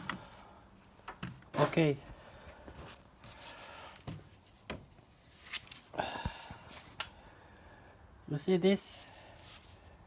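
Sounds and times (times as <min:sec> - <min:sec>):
scrape: 0:09.0 - 0:09.9.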